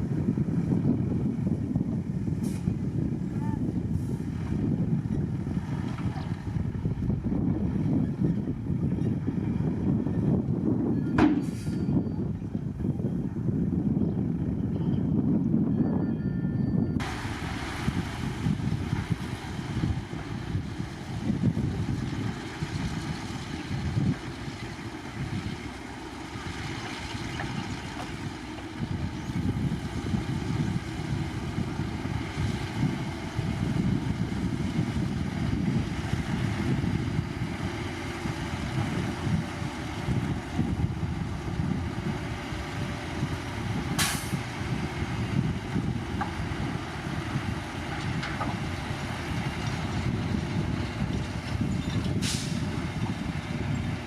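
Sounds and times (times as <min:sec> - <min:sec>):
heavy diesel machinery rumbling: 0:00.0 - 0:54.0
air brakes hiss: 0:11.4 - 0:11.9, 0:44.0 - 0:44.4, 0:52.2 - 0:52.6.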